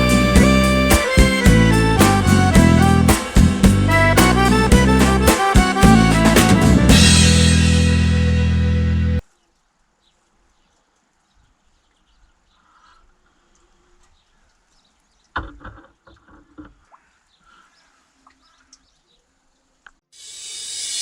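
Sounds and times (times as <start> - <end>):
music: 0.0 - 9.2.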